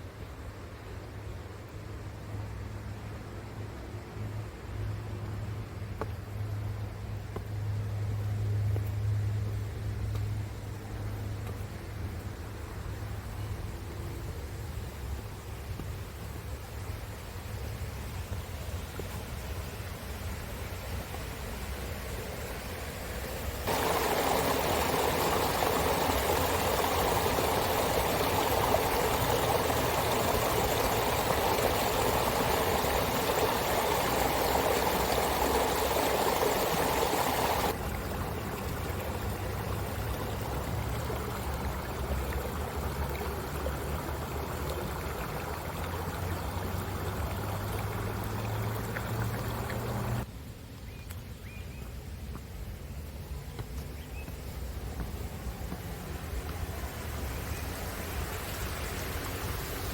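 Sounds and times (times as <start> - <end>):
water rushing: 12.1 - 50.3, 54.3 - 59.9.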